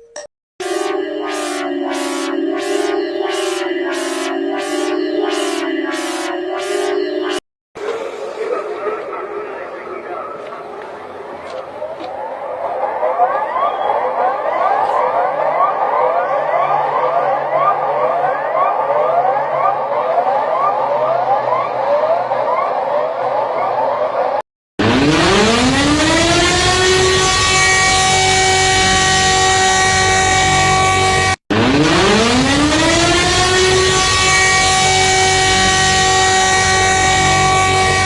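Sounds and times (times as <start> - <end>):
low hum: 0.6 - 7.4
rising electronic chirps: 0.6 - 7.4, 24.8 - 38.0
siren winding up to a wail: 0.6 - 7.4, 11.8 - 38.0.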